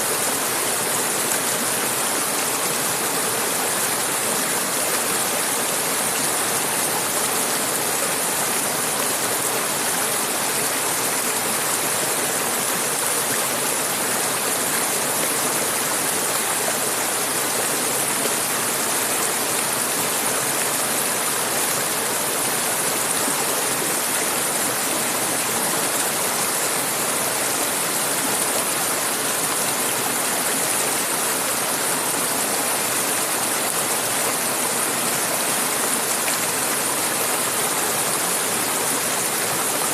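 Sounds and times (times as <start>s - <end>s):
river flowing over rocks: 0.0s - 39.9s.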